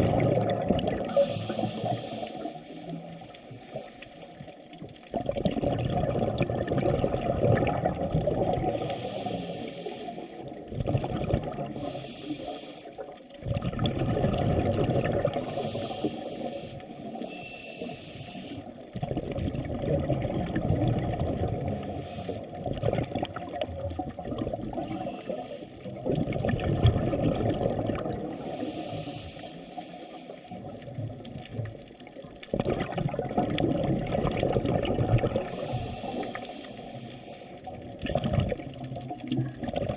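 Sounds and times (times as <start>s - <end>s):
water rushing and sloshing: 0.0s - 39.9s.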